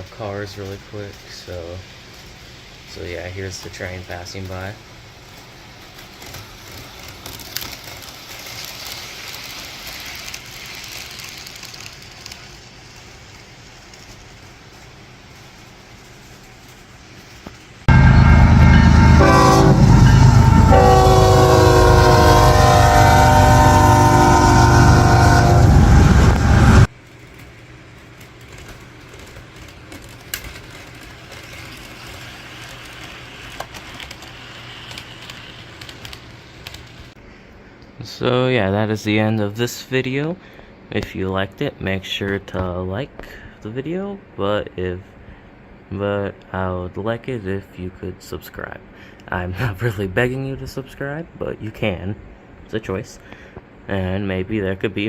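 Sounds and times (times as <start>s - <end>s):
model train rattling past: 0.0s - 37.1s
diesel horn through small speaker: 18.3s - 26.9s.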